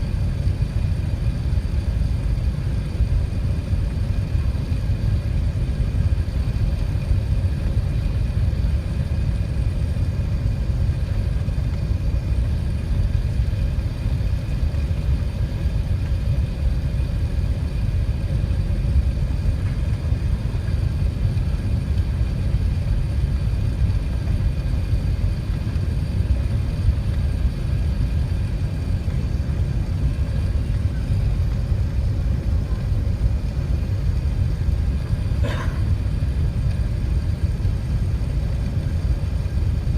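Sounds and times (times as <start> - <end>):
airliner cabin rumble: 0.0 - 39.9
faint hum tones: 0.0 - 39.9.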